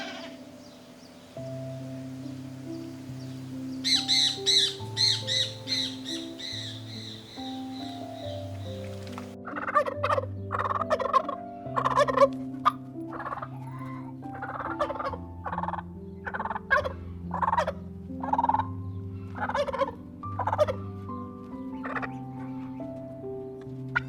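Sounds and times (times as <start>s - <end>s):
domestic fowl calling: 0.0s - 1.2s, 3.8s - 8.7s, 9.5s - 13.5s, 19.4s - 20.8s.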